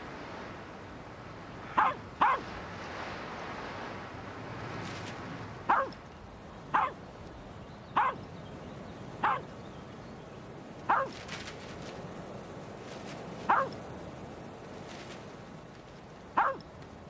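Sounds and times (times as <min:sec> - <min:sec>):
dog barking: 0:01.6 - 0:02.5, 0:05.7 - 0:06.0, 0:06.7 - 0:07.0, 0:08.0 - 0:08.3, 0:09.2 - 0:09.5, 0:10.9 - 0:11.2, 0:13.4 - 0:13.8, 0:16.4 - 0:16.7.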